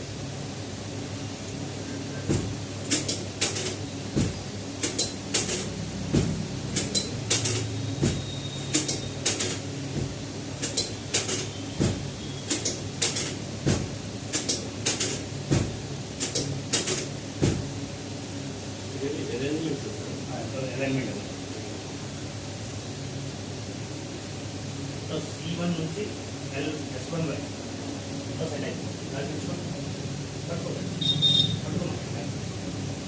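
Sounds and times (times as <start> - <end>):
steady low hum: 0.0 - 33.0
sharp clicks and knocks: 2.3 - 17.6.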